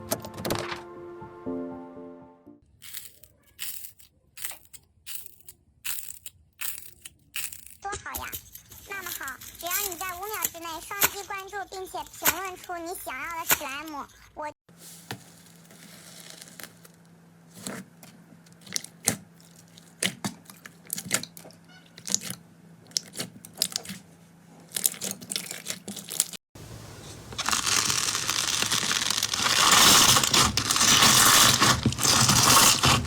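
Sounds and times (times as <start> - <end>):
slime crackling and crunching: 2.8 - 13.5, 15.2 - 17.0, 18.6 - 21.4, 24.7 - 26.4, 27.4 - 33.0.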